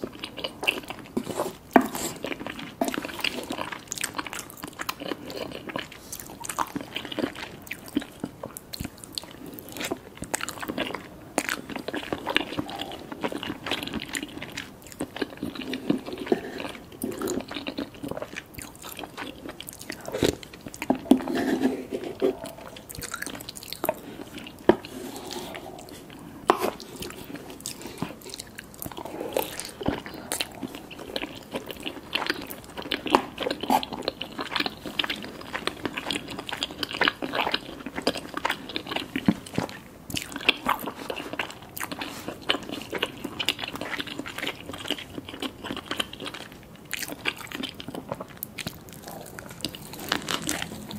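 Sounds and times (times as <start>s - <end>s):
crunchy bites and chewing: 27.0s - 50.9s.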